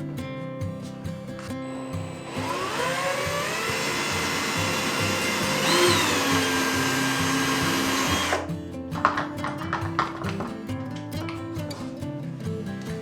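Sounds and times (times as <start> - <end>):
background music: 0.0 - 13.0
electric motor spinning: 1.6 - 8.5.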